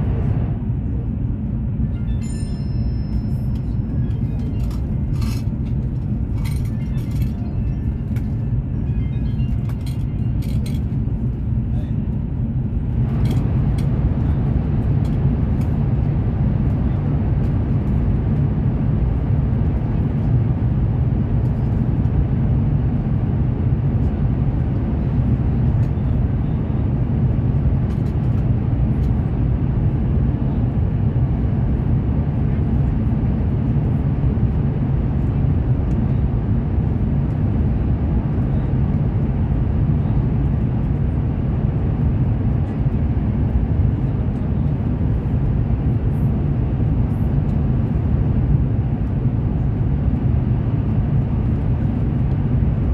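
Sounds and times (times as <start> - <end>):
train rumble from inside: 0.0 - 52.9.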